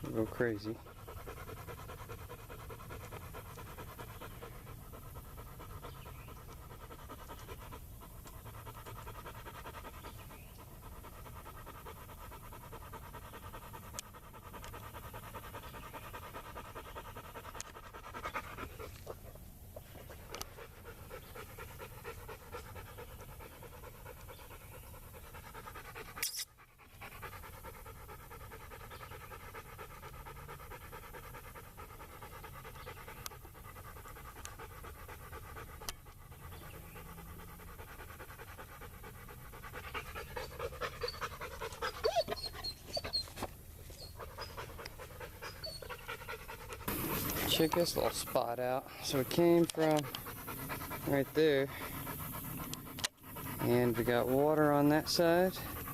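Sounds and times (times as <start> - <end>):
dog panting: 0.0 - 55.9
sharp click: 26.2 - 26.5.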